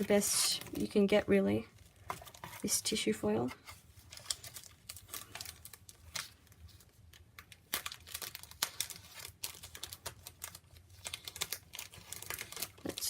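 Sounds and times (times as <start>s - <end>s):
paper and foil crinkling: 0.0s - 13.0s.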